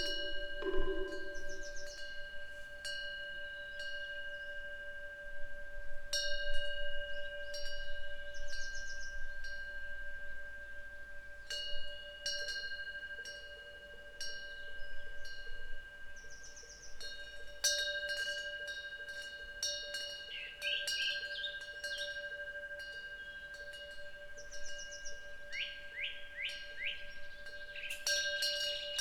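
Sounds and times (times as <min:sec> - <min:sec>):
bird chirping: 0:00.0 - 0:02.2
wind bell ringing: 0:00.0 - 0:29.0.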